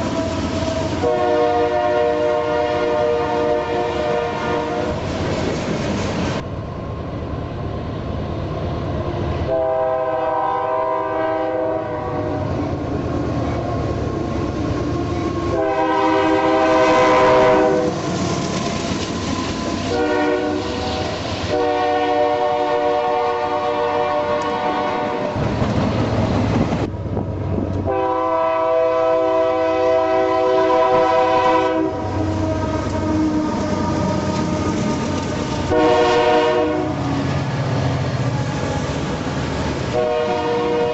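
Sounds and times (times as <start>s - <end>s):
train rolling rumble: 0.0s - 40.9s
locomotive air horn blasts: 1.0s - 5.0s, 9.5s - 12.6s, 15.5s - 18.0s, 19.9s - 25.4s, 27.8s - 33.2s, 35.7s - 37.1s, 39.9s - 40.9s.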